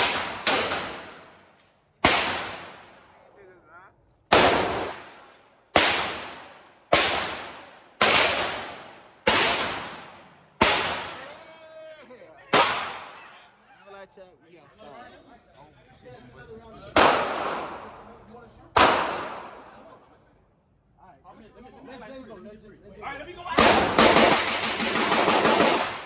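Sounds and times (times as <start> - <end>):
gunshots with echoing tail: 0.0 - 1.4, 2.0 - 3.2, 4.3 - 11.2, 12.5 - 13.2, 17.0 - 18.2, 18.8 - 19.9, 23.6 - 26.0.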